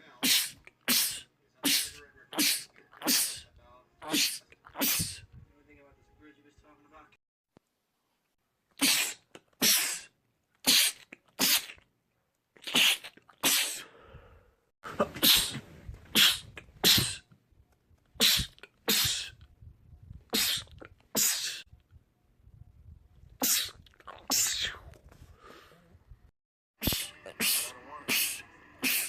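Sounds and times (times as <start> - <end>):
man sneezing: 0.2 - 5.3, 8.8 - 11.8, 12.6 - 13.9, 14.9 - 17.3, 18.2 - 19.4, 20.3 - 21.7, 23.4 - 24.8, 26.8 - 29.0.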